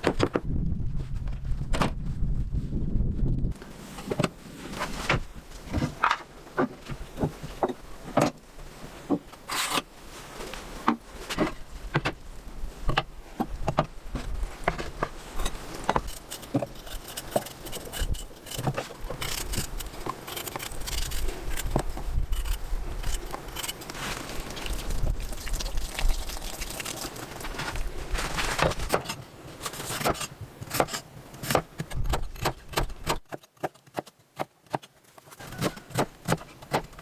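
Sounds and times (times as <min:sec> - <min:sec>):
materials being handled: 0:03.6 - 0:31.5.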